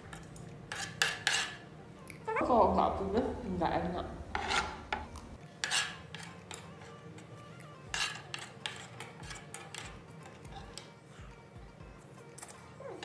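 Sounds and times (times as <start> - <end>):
cutlery scraping on a plate: 0.0 - 1.7, 2.7 - 11.0.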